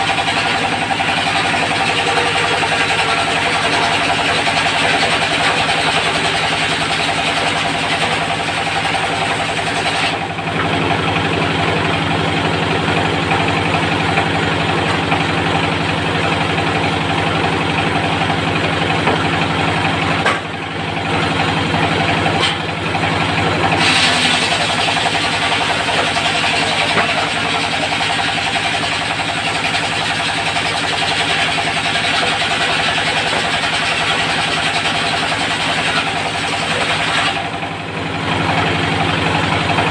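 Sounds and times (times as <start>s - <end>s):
saw blade cutting wood: 0.0s - 10.2s, 23.7s - 37.5s
diesel engine running: 0.0s - 39.9s.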